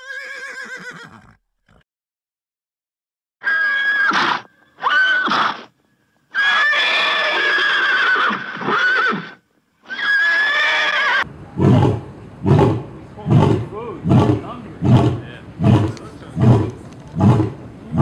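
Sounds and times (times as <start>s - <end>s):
horse neighing: 0.0s - 1.8s, 6.3s - 11.9s.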